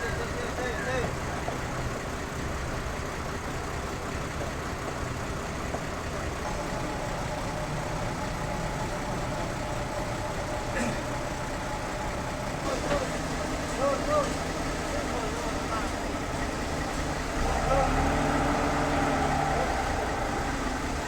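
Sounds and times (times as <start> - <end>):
sawmill machinery droning: 4.7 - 21.0.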